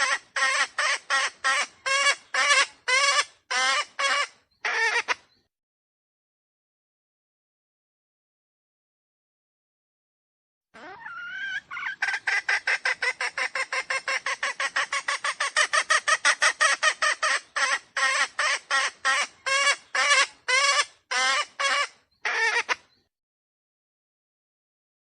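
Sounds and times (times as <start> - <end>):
junglefowl clucking calls: 0.0 - 5.2, 10.8 - 22.9.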